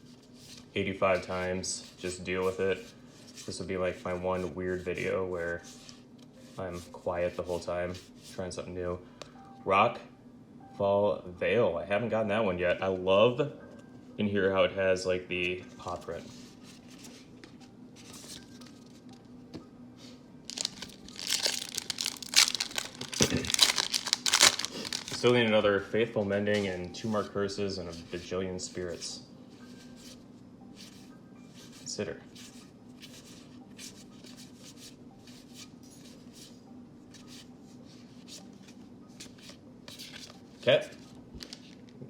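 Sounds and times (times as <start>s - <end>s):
low steady hum: 0.0s - 42.0s
plastic packaging crinkling: 20.5s - 25.4s, 41.4s - 42.0s
trading cards rustling: 20.5s - 25.5s, 38.3s - 42.0s.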